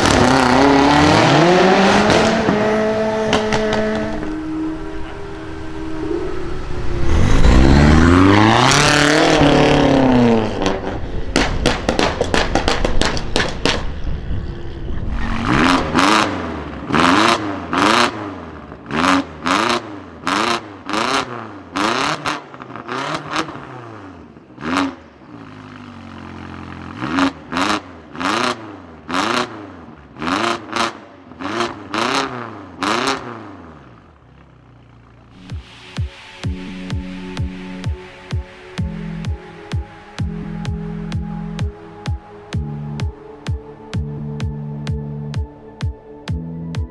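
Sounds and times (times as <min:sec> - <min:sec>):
car engine accelerating and revving: 0:00.0 - 0:34.2
exhaust crackles and pops: 0:03.2 - 0:04.4, 0:10.4 - 0:16.2.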